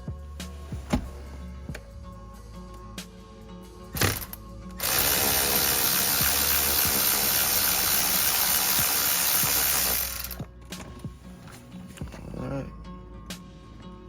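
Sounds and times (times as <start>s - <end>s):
ratchet wrench ratcheting: 4.0s - 10.4s.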